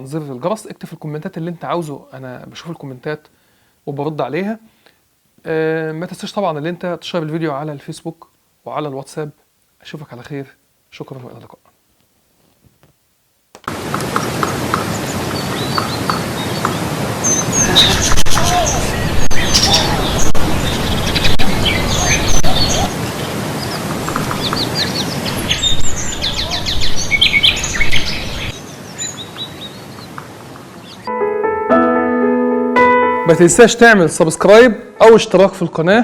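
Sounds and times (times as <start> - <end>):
small birds chirping: 14.2 - 30.2.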